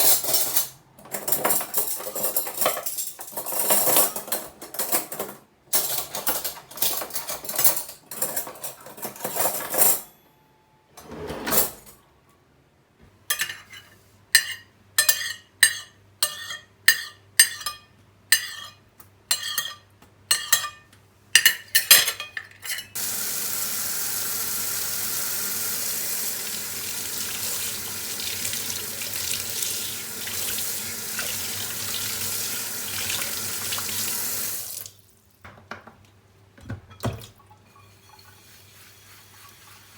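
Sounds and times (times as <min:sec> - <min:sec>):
cutlery clattering against dishes: 0:00.0 - 0:10.2, 0:13.3 - 0:23.0
spoon scraping a plate: 0:13.4 - 0:20.8
tap water running into sink: 0:23.0 - 0:35.0.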